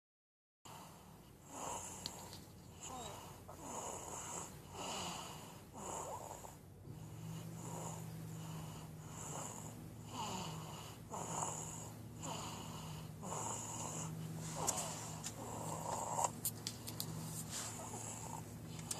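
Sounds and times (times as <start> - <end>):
wheezy snoring: 0.7 - 16.4, 17.4 - 18.9
steady low hum: 0.7 - 18.9.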